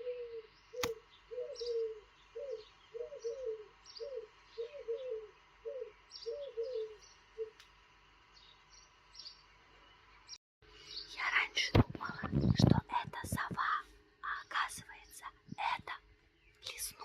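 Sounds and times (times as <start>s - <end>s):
wood pigeon cooing: 0.0s - 7.6s
small birds chirping: 0.0s - 17.0s.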